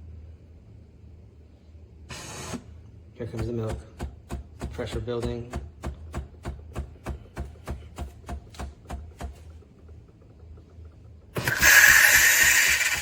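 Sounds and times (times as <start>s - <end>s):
steam hissing frothing milk: 2.1s - 2.8s, 11.4s - 13.0s.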